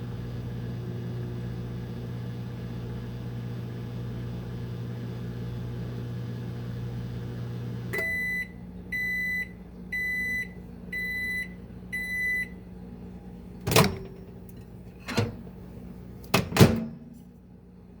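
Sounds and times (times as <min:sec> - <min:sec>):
microwave oven humming: 0:00.0 - 0:18.0
microwave door clicks and thumps: 0:13.6 - 0:14.4, 0:16.2 - 0:17.2.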